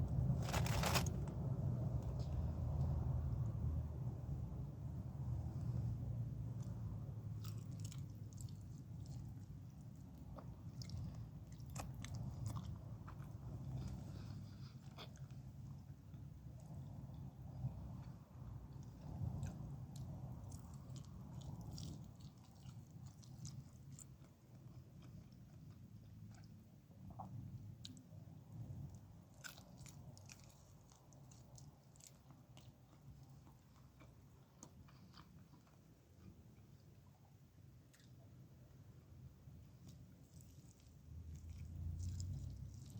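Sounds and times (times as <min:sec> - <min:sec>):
crisp crunches: 0:00.0 - 0:01.4
chewing and biting food: 0:00.2 - 0:01.2, 0:06.5 - 0:37.3, 0:39.7 - 0:42.9.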